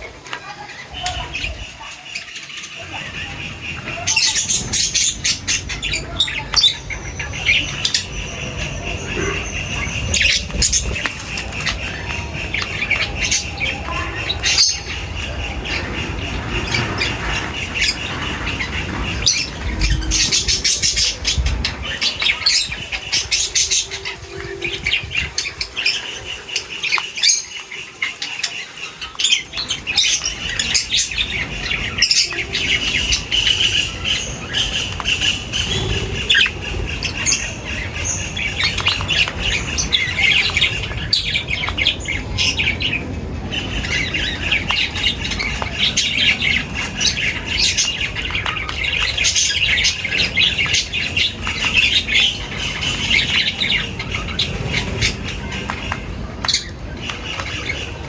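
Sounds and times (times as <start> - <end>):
birds chirping and squawking: 0.0 - 58.0
wing flutters: 10.0 - 12.4.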